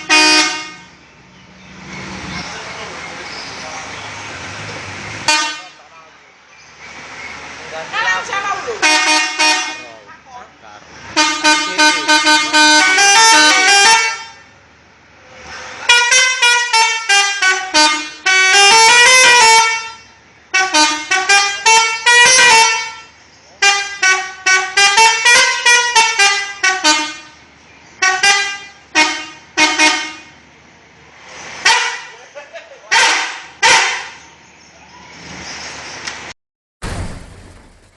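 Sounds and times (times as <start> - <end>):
bus horn playing quick melodies: 0.0 - 1.0, 5.3 - 5.8, 8.8 - 9.9, 11.2 - 14.4, 15.9 - 27.4, 28.0 - 30.3, 31.6 - 32.1, 32.9 - 34.2.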